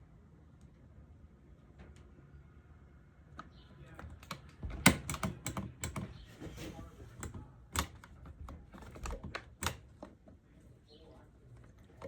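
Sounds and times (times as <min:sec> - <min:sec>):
sharp clicks and knocks: 0:03.4 - 0:06.3, 0:07.2 - 0:10.4.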